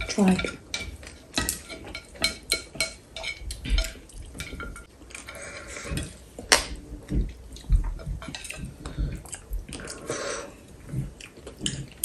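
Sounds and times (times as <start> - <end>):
chopsticks clinking on plates: 0.0 - 6.8.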